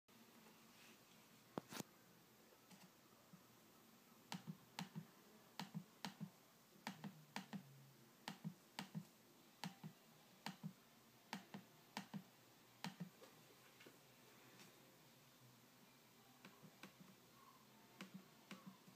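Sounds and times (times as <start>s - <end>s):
trackpad clicks: 4.3s - 5.0s.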